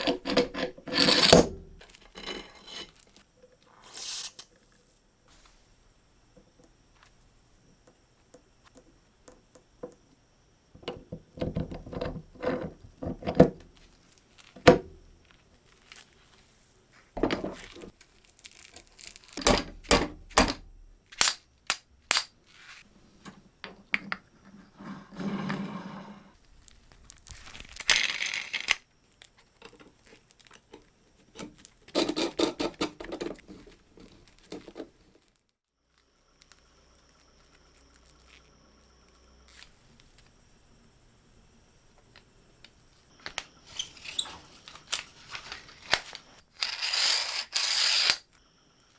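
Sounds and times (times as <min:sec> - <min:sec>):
metal tools clinking on workbench: 0:31.9 - 0:33.4.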